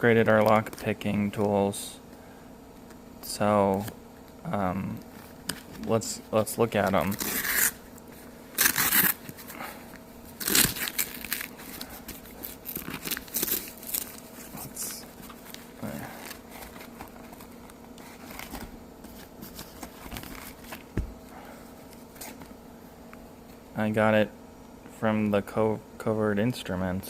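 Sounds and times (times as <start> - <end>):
packaging crinkling and rustling: 8.6 - 20.9.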